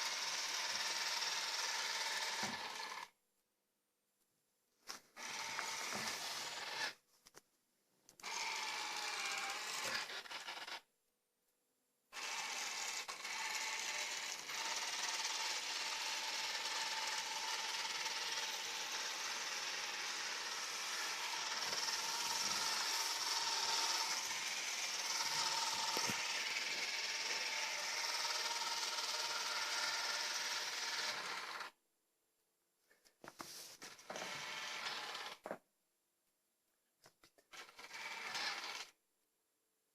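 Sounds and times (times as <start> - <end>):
robot vacuum motor whine: 0.0 - 3.1, 5.2 - 7.0, 8.2 - 10.8, 12.2 - 31.7, 33.9 - 35.4, 37.5 - 38.9.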